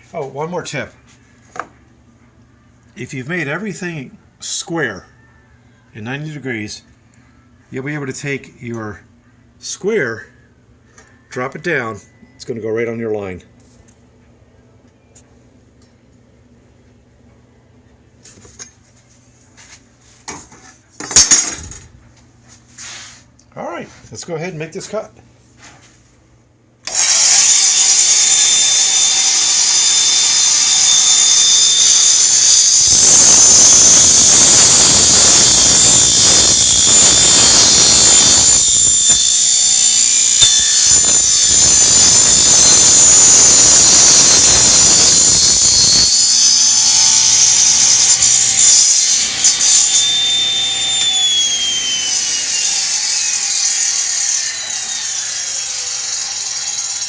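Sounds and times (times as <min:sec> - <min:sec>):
saw blade cutting wood: 0:26.9 - 0:57.0
table saw whining: 0:26.9 - 0:57.0.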